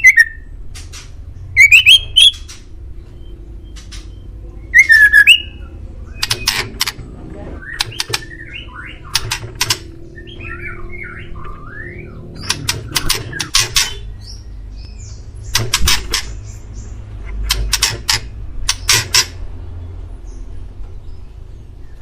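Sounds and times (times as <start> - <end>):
bird whistled song: 0.0 - 0.5, 1.5 - 2.5, 3.1 - 6.6, 7.6 - 9.3, 10.1 - 15.3
bird harsh rasping notes: 7.6 - 14.6.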